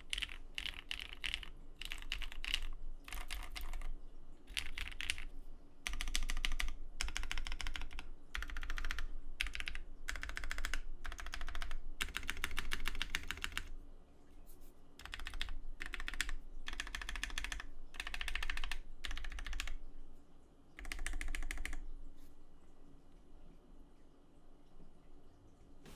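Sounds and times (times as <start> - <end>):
mechanical keyboard keystrokes clacking: 0.1 - 3.9, 4.5 - 5.3, 5.9 - 13.7, 15.0 - 19.8, 20.8 - 21.8.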